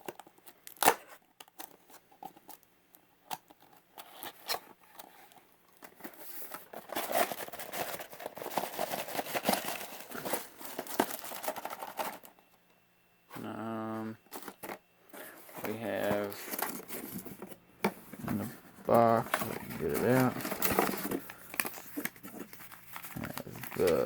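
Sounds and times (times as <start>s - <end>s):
cardboard scraping and tearing: 4.0s - 12.3s, 15.5s - 24.0s.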